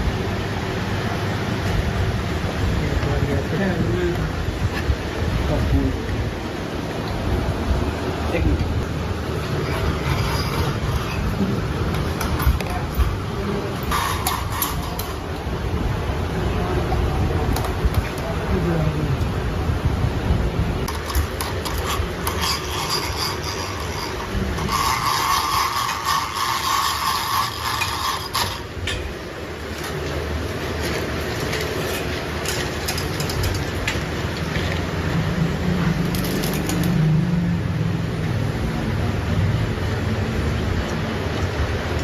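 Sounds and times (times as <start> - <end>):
low machine hum: 0.0 - 36.2
metalworking machine whine: 8.8 - 15.7, 20.9 - 34.1
scraping and rapid clicks: 9.3 - 15.5, 20.8 - 29.1, 29.7 - 34.9.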